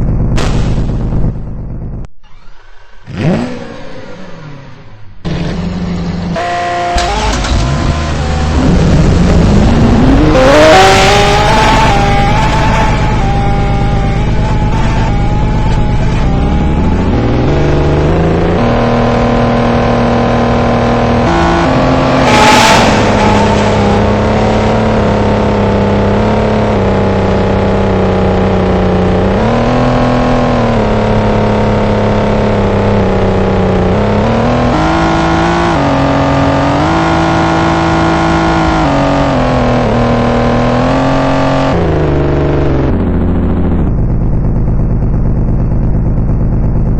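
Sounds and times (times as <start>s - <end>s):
engine-like running sound: 0.0s - 46.9s.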